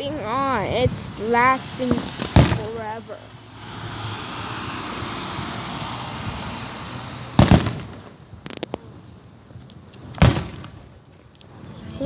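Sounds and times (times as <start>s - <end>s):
fireworks booming: 0.0s - 11.2s
fireworks cracking: 0.0s - 11.8s.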